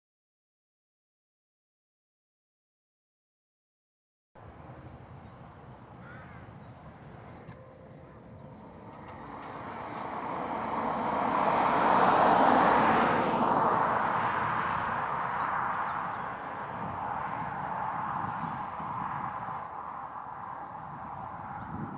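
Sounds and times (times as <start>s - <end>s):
tractor running under load: 8.2s - 21.9s.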